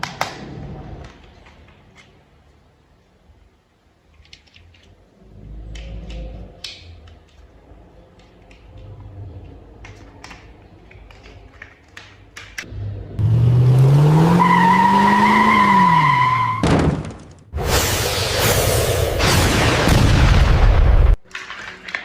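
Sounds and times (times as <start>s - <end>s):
plastic toy parts clicking: 4.1s - 12.7s, 21.2s - 22.0s
thud: 16.6s - 17.4s.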